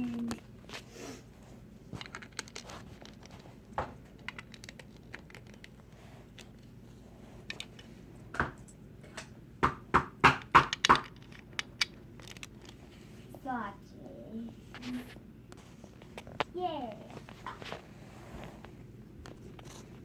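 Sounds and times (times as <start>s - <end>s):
plastic cup clicks and knocks: 9.6s - 11.9s.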